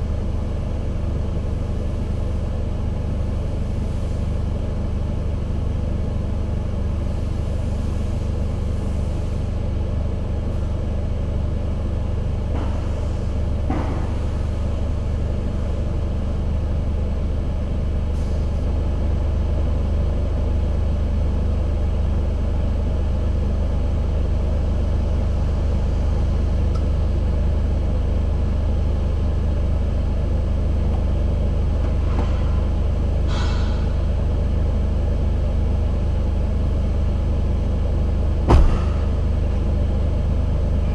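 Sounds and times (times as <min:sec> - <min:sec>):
car engine humming: 0:34.0 - 0:40.9.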